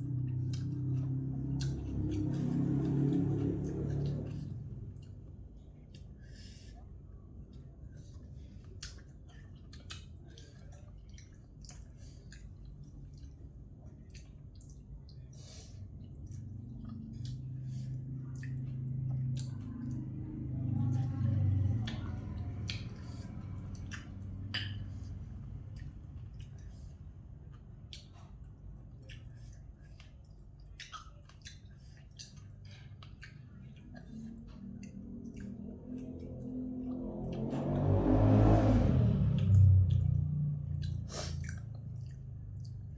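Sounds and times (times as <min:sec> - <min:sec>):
low hum: 0:00.0 - 0:05.8, 0:15.7 - 0:28.3, 0:32.2 - 0:42.9
wet chewing and smacking: 0:00.0 - 0:06.3, 0:07.4 - 0:42.9.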